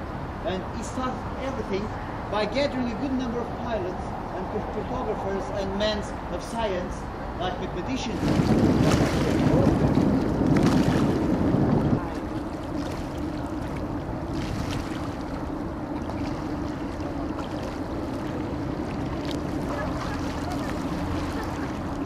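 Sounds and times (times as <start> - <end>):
water rushing: 1.0 - 22.0
boat motor humming: 7.0 - 22.0
wind buffeting microphone: 7.8 - 22.0.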